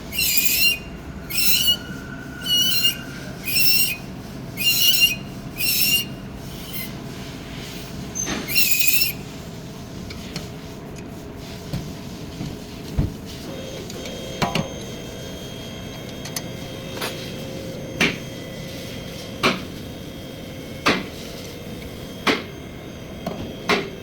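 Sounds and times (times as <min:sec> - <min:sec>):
brakes squealing: 0:00.0 - 0:09.3.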